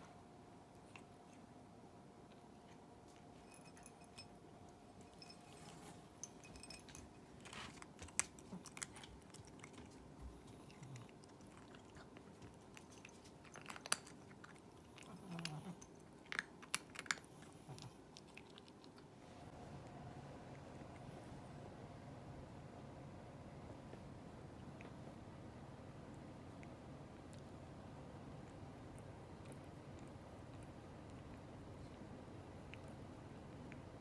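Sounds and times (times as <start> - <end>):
cat crunching dry kibble: 5.5 - 19.1.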